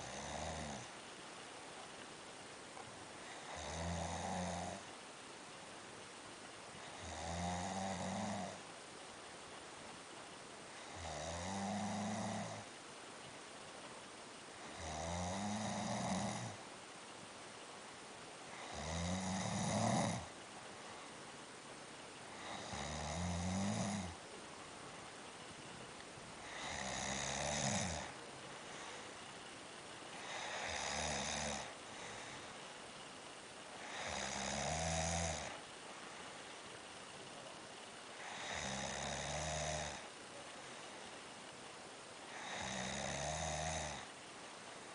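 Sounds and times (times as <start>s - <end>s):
heavy snoring: 0.0s - 1.0s, 3.2s - 4.9s, 6.8s - 8.6s, 10.8s - 12.7s, 14.6s - 16.6s, 18.5s - 20.4s, 22.3s - 24.2s, 26.4s - 29.3s, 30.1s - 32.6s, 33.8s - 35.6s, 38.1s - 40.1s, 42.3s - 44.2s
quiet breaths: 0.0s - 44.9s.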